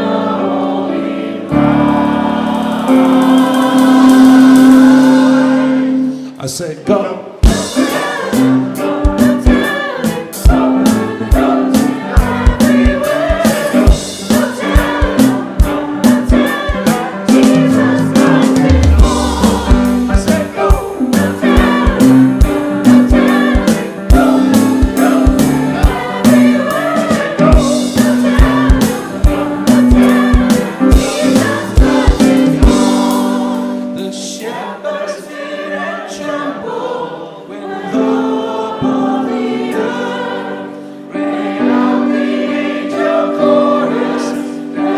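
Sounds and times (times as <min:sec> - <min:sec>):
choir singing gospel song: 0:00.0 - 0:44.9
steady drum beat: 0:02.5 - 0:05.4, 0:07.4 - 0:33.7
bass: 0:17.3 - 0:29.0.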